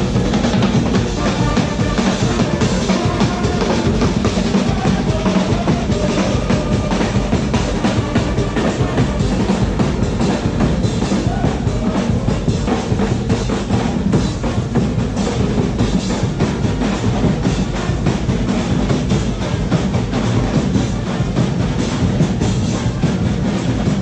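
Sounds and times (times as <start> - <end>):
loud dance music with drums: 0.0 - 24.0.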